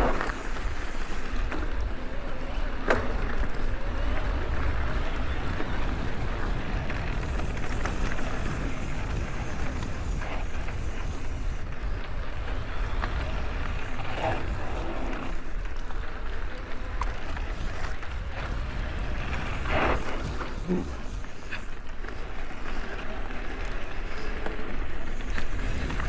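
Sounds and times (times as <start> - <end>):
bike tyres on dirt trail: 0.0 - 26.0
wind buffeting microphone: 3.7 - 21.8.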